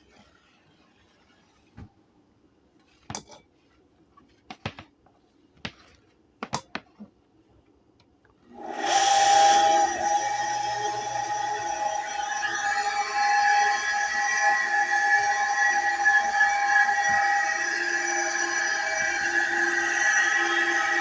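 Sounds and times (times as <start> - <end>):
pump motor whining: 8.5 - 21.0.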